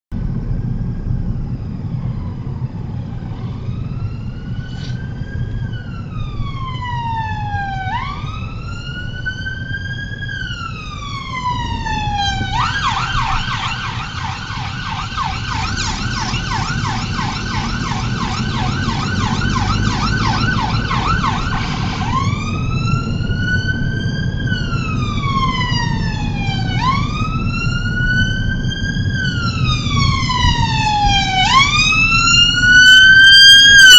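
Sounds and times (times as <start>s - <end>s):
emergency siren wailing and yelping: 0.5s - 33.9s
low rumble: 8.1s - 32.0s.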